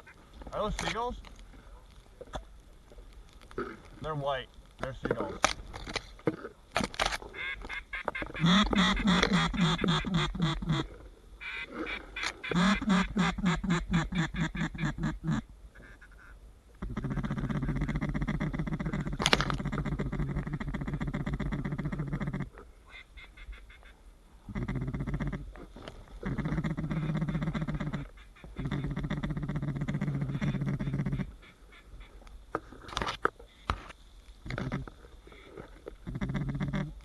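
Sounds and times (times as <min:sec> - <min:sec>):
duck quacking: 0:07.4 - 0:10.8, 0:11.4 - 0:21.5, 0:29.9 - 0:32.1
raspy buzzing call: 0:07.4 - 0:25.4.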